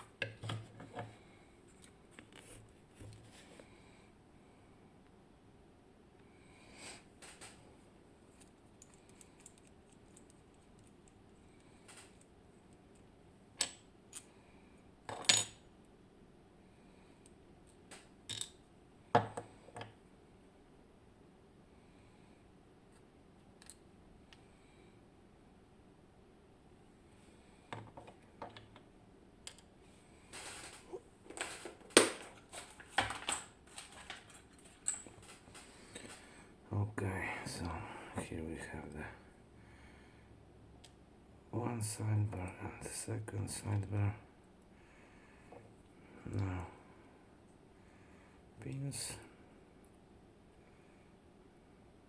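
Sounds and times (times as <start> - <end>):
small metal parts clicking: 8.4 - 12.3, 18.3 - 18.6, 31.4 - 36.2.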